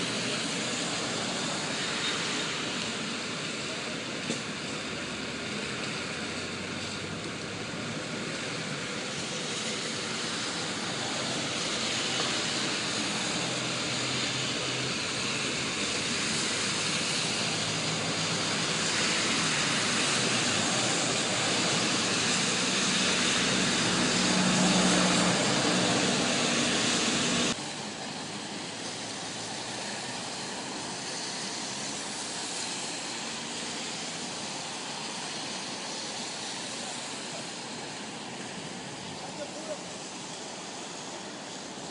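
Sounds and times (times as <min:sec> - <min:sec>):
rain: 0:00.0 - 0:41.9
traffic on wet streets: 0:00.0 - 0:41.9
engine passing: 0:05.1 - 0:27.8.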